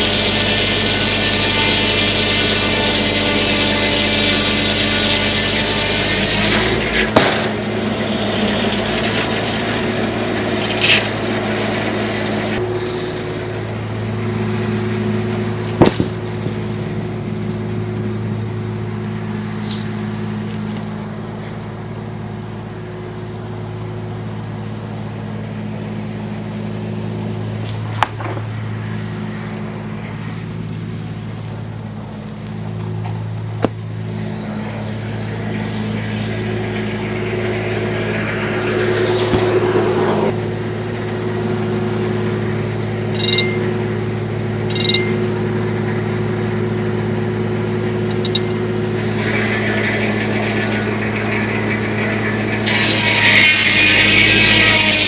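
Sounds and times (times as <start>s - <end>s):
sharp knocks from sawmill: 0.0s - 13.4s, 14.2s - 17.3s, 27.6s - 29.2s, 32.9s - 34.6s, 38.2s - 47.2s, 47.8s - 55.0s
circular saw cutting log: 0.0s - 55.0s
tractor engine running: 0.0s - 55.0s.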